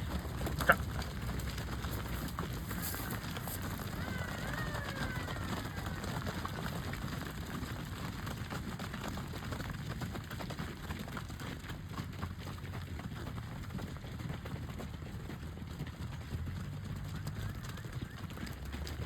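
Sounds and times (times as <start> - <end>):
low engine rumble: 0.0 - 7.0
cattle hooves clattering: 0.0 - 19.0.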